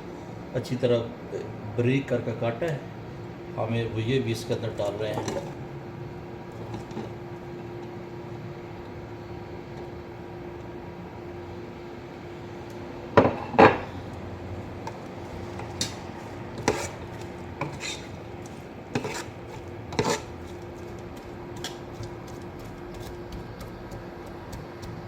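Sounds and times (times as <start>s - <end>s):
faint steady hum: 0.0s - 25.0s
metal spoon scraping a pan: 15.6s - 20.6s.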